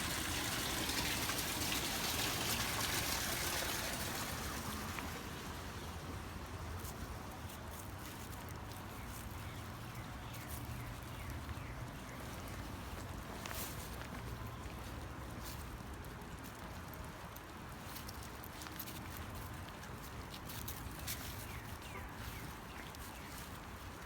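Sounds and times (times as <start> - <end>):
water trickling: 0.0 - 7.3
rain: 0.0 - 7.4.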